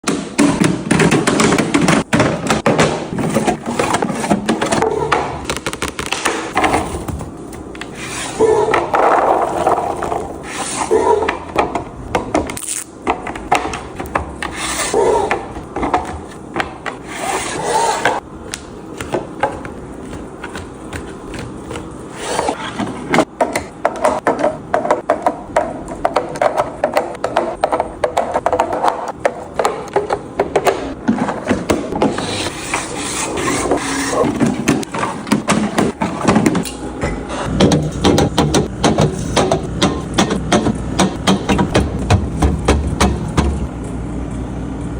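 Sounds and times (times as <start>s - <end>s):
packaging rubbing and scraping: 3.1s - 8.4s.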